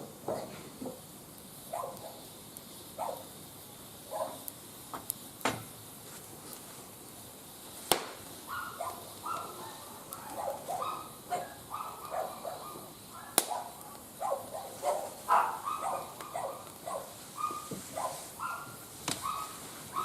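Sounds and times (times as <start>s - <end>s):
dog barking: 1.7s - 2.2s, 3.0s - 3.3s, 4.1s - 4.4s, 8.5s - 20.0s
sharp cracks: 7.8s - 8.4s, 13.4s - 14.0s.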